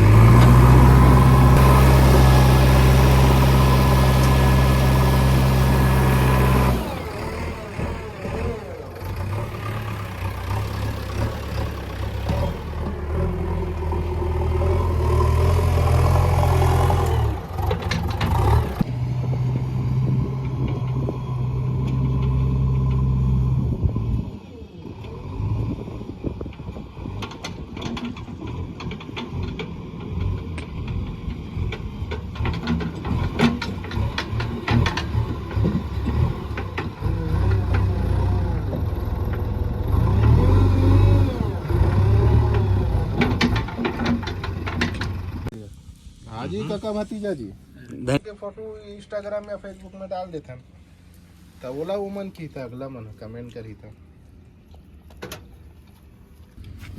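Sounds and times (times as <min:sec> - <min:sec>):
diesel engine revving: 0:00.0 - 0:27.7, 0:28.3 - 0:46.6
clattering and knocks: 0:27.2 - 0:37.9, 0:42.4 - 0:45.5.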